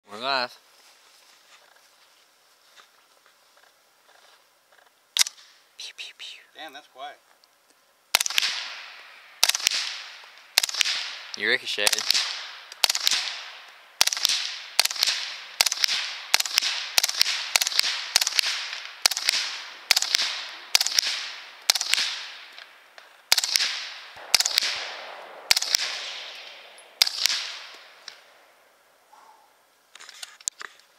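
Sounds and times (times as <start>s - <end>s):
suppressed gunshots with echo: 8.1s - 22.7s, 23.3s - 28.6s.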